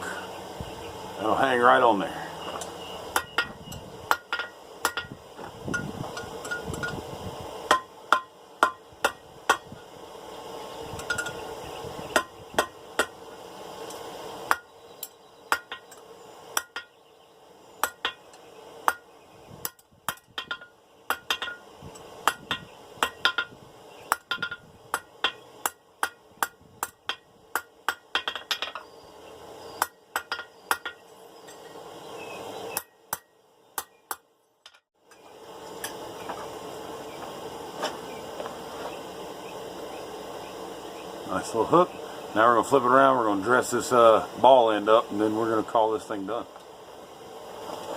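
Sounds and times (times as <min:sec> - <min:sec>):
hammer striking steel on anvil: 0:02.5 - 0:06.9, 0:07.7 - 0:09.8, 0:12.1 - 0:13.2, 0:13.9 - 0:14.7, 0:15.5 - 0:16.0, 0:16.6 - 0:16.9, 0:17.8 - 0:18.2, 0:18.8 - 0:23.5, 0:24.1 - 0:28.8, 0:29.8 - 0:31.0.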